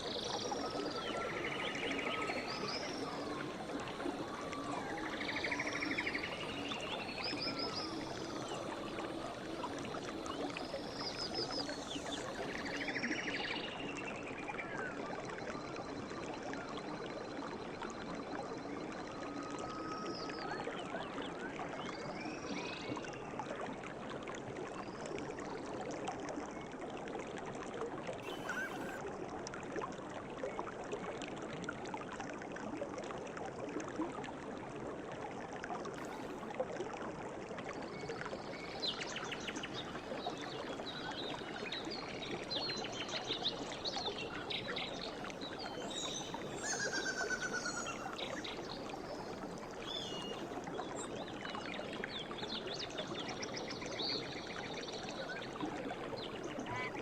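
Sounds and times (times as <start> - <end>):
river water flowing: 0.0 - 57.0
birds calling: 28.2 - 29.0.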